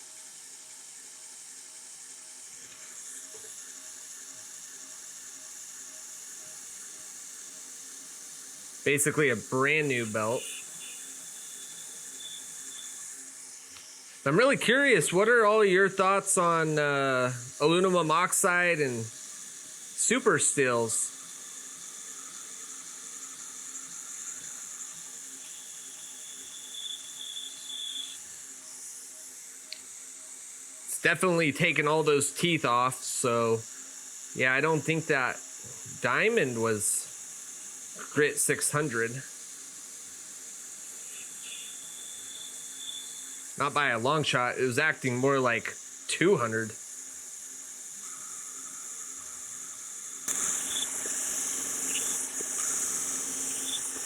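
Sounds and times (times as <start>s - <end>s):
belt sander hissing: 0.0s - 54.0s
faint motor hum: 0.0s - 54.0s
thin high whine: 0.0s - 54.0s.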